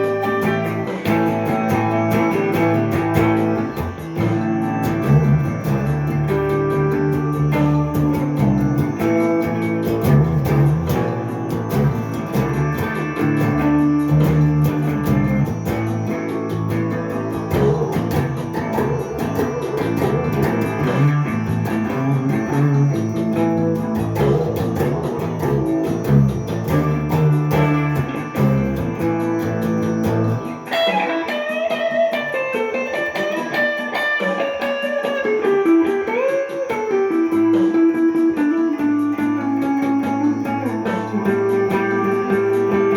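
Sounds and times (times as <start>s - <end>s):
low bass notes: 0.0s - 30.6s
jazzy electric guitar improvising: 0.0s - 42.9s.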